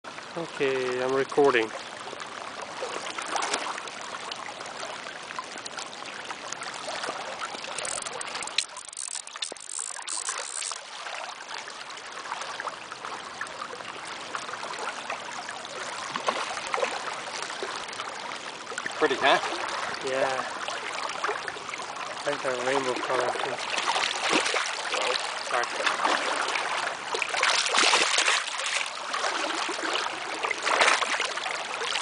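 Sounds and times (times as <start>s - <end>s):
water splashing and hissing: 0.4s - 32.0s
river water rushing: 14.5s - 32.0s.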